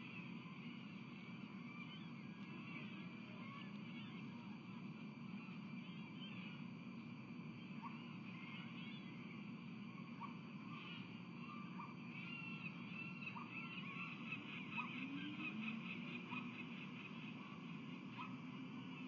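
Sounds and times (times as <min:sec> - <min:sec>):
steady low background hum: 0:00.0 - 0:19.0
birds chirping: 0:07.6 - 0:19.0.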